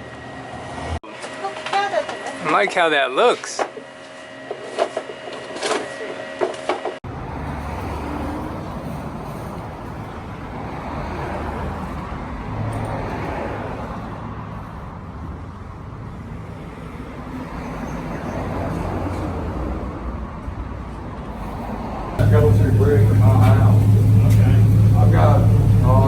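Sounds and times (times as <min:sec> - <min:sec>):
low hum: 0:22.2 - 0:26.0.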